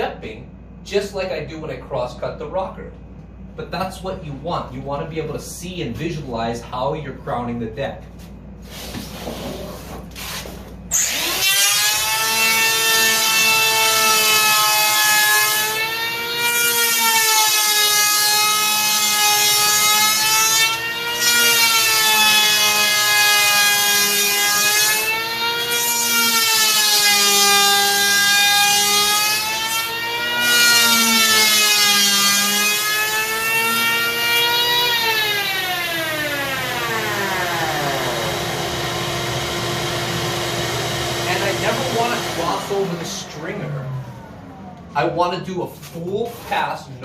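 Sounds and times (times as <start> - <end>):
electric planer cutting foam: 10.9 - 44.7.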